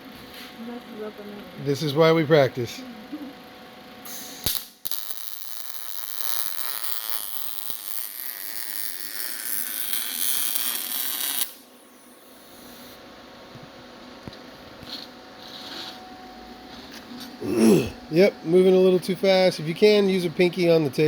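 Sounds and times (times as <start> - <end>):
welding arc hissing: 4.0 - 13.1
welding arc striking click: 4.1 - 11.6.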